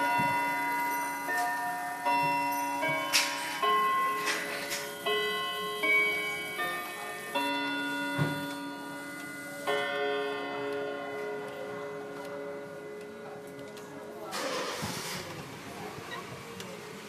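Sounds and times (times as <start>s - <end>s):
clock chime ringing: 0.0s - 14.3s
faint clock tick: 3.0s - 14.2s.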